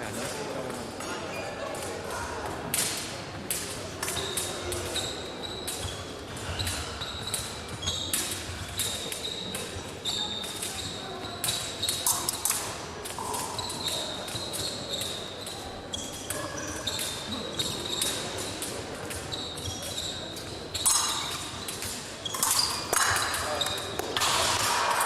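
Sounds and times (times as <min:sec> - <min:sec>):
fencing footwork: 0:02.7 - 0:25.0
high squeaks: 0:04.2 - 0:12.7, 0:19.1 - 0:24.5.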